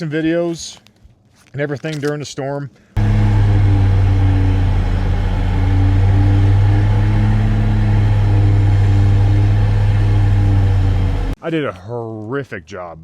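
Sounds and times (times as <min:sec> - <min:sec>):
vehicle engine running: 0:03.0 - 0:11.4.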